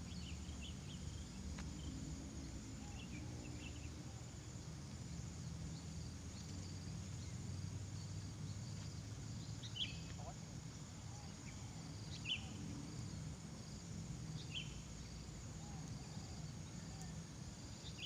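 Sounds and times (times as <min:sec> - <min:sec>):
high insect drone: 0:00.0 - 0:18.0.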